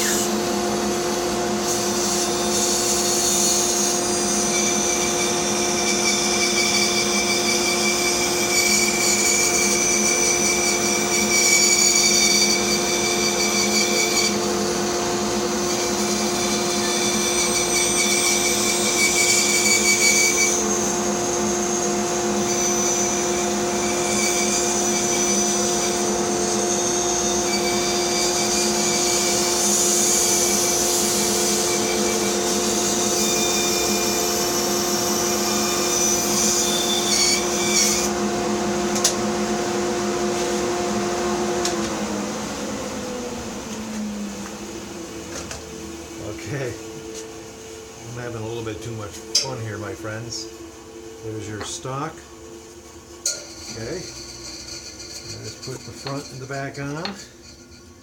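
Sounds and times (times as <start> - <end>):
saw blade cutting wood: 0.0 - 0.6, 1.4 - 38.2, 53.2 - 58.0
bandsaw motor hum: 0.0 - 58.0.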